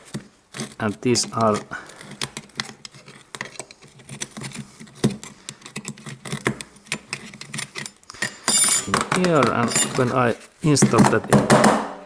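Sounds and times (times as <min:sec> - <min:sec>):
steel clutch plates clinking: 0:08.2 - 0:10.0.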